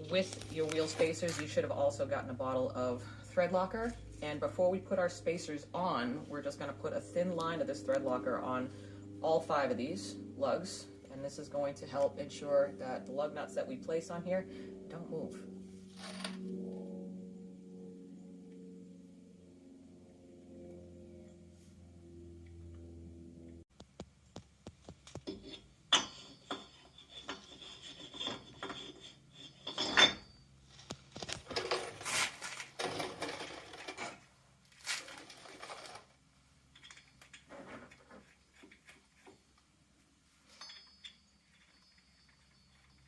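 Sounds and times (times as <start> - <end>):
metal scraping and rubbing: 0.0 - 8.6, 15.4 - 17.0, 25.2 - 36.2
metal clinks and knocks: 15.9 - 16.5, 25.0 - 34.3, 36.7 - 39.6, 40.4 - 43.0.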